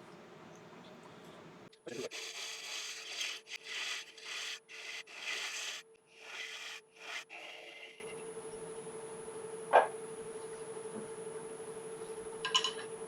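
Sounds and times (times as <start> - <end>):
gouge cutting wood on lathe: 2.0 - 8.2.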